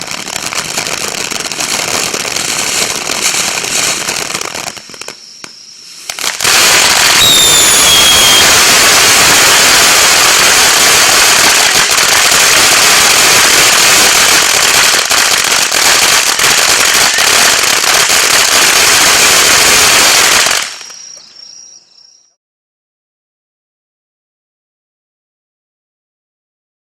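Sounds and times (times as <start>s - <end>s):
firework fountain crackling: 0.0s - 21.5s
falling whistle: 6.7s - 10.0s.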